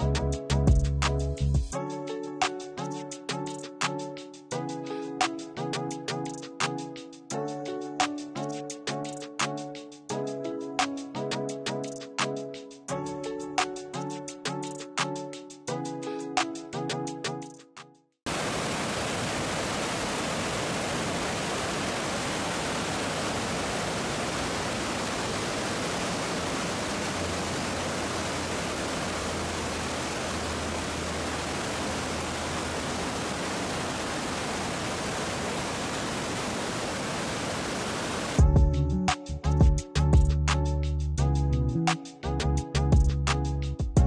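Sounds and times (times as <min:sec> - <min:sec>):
waterfall roaring: 0:18.3 - 0:38.4.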